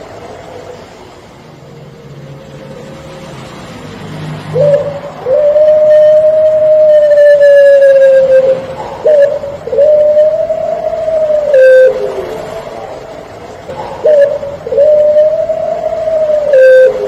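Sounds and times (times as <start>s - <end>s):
dove cooing: 4.3s - 17.0s.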